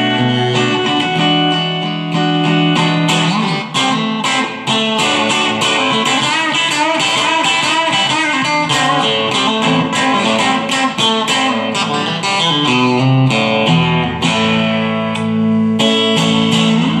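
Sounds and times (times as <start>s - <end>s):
electric guitar picked notes and chords: 0.0s - 17.0s.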